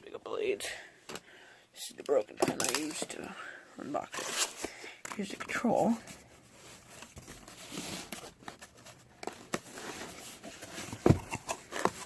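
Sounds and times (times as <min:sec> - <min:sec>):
packaging rustling and crinkling: 0:06.0 - 0:12.0.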